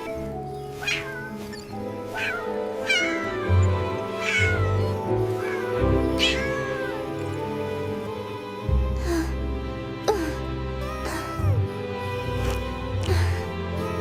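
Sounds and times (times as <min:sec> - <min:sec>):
background music: 0:00.0 - 0:14.0
kitten meowing: 0:00.8 - 0:01.6, 0:02.2 - 0:07.4.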